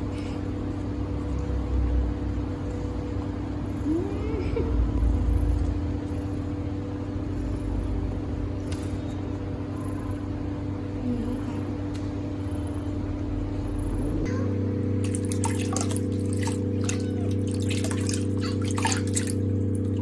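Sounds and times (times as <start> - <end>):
mechanical hum with low rumble: 0.0 - 20.0
kitten mewing: 16.4 - 19.3.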